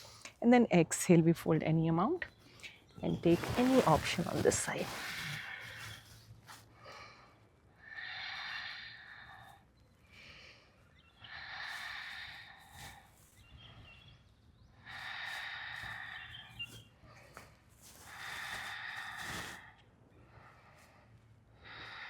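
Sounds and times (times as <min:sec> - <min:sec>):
person breathing slowly: 0:06.7 - 0:13.2, 0:14.8 - 0:22.0.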